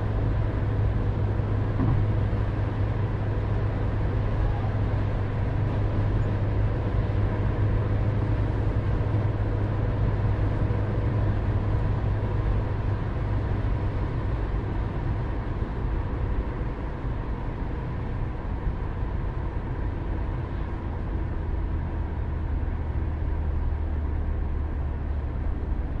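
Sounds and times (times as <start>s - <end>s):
car engine and road noise rumble: 0.0s - 26.0s.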